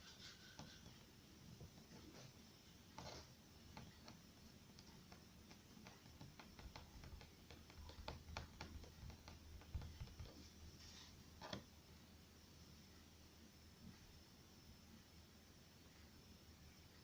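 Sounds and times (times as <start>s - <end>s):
faint light clicks and taps: 3.7s - 10.5s.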